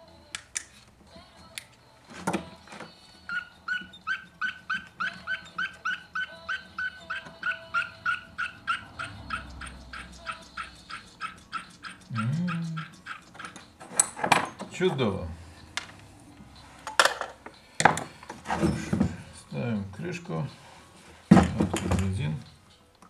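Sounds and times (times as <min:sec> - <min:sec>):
dog yapping: 0:02.8 - 0:15.6
clicks and knock: 0:10.4 - 0:14.8, 0:16.8 - 0:19.3, 0:21.3 - 0:22.2.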